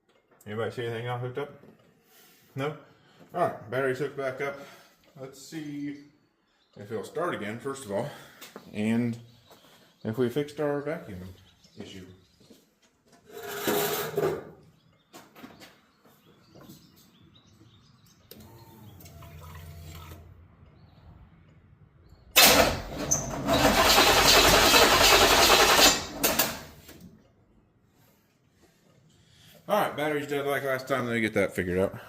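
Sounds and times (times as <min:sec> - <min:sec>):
engine starter cranking: 0:22.4 - 0:26.9.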